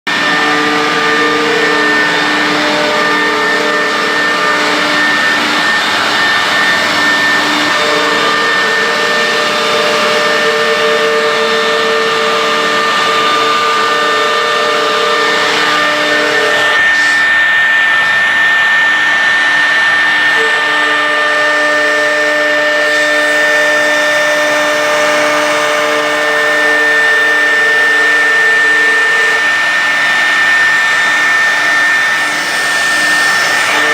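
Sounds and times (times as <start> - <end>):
loud rushing noise: 0.1 - 20.4
low motor tones: 0.1 - 33.9
router spindle whine: 0.1 - 33.9.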